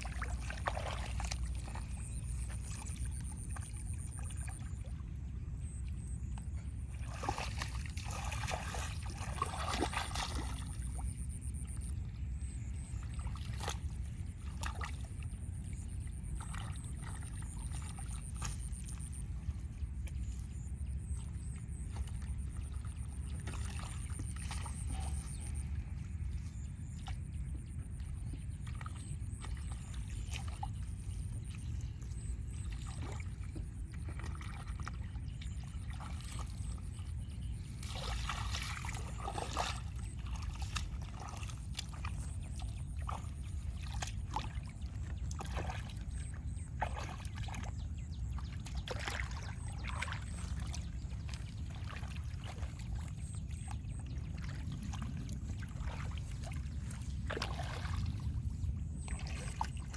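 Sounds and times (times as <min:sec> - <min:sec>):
steady low rumble: 0:00.0 - 0:59.9
water splashing and sloshing: 0:00.0 - 0:59.9.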